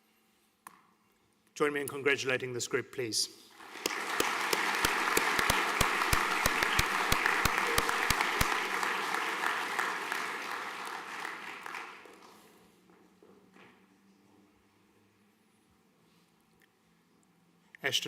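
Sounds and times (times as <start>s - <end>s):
nearby hands clapping sharply: 3.6s - 12.4s
audience applauding: 3.6s - 12.5s.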